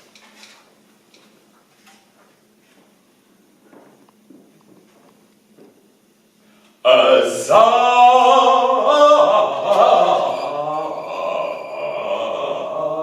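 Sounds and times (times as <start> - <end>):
man singing early music: 6.9 - 13.0.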